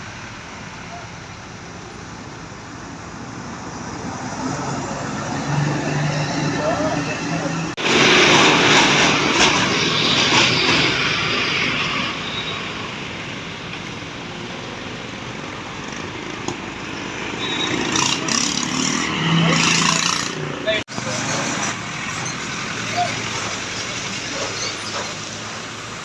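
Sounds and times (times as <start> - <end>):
vehicle approaching: 0.0 - 26.0
vehicle passing close by: 3.2 - 12.2.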